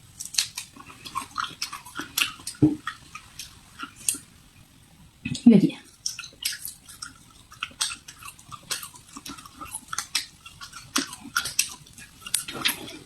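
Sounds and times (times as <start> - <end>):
crisp chewing crunches: 0.2 - 4.3, 5.9 - 13.0.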